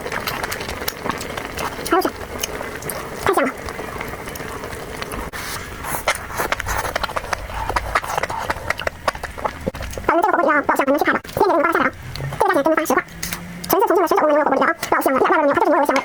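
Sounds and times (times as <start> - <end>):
chewing with wet mouth smacks: 0.0 - 3.4, 5.9 - 10.1.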